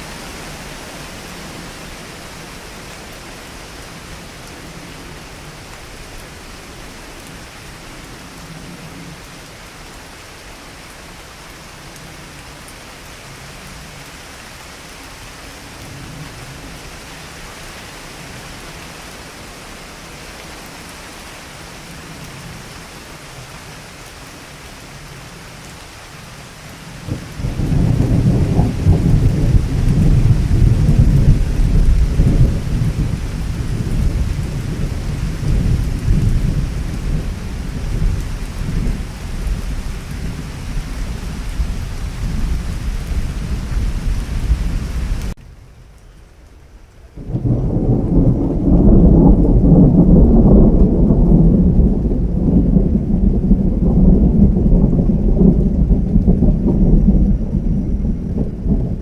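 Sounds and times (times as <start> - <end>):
heavy rain hissing: 0.0 - 45.4
thunder clap and rumble: 27.0 - 45.4, 47.2 - 59.0.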